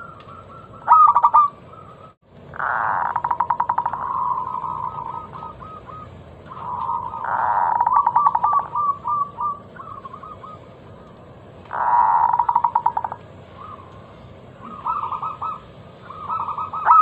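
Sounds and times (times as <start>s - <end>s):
dove cooing: 0.0s - 11.0s, 11.6s - 17.0s.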